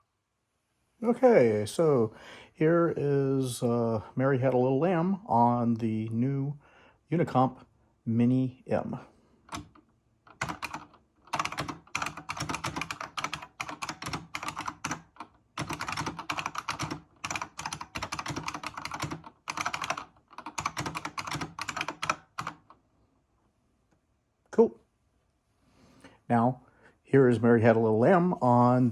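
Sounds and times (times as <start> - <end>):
keyboard keystrokes clacking: 9.5 - 22.8.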